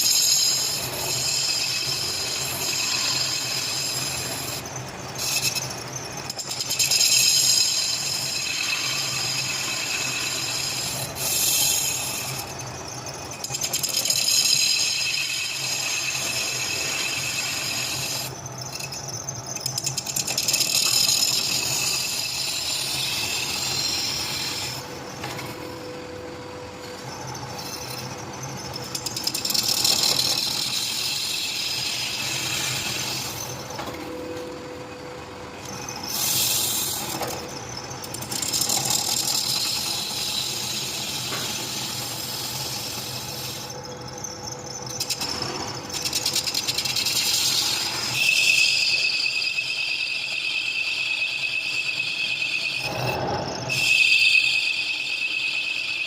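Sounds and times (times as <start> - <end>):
metal cutting and scraping: 0.0 - 56.0
machine hum: 14.9 - 49.3.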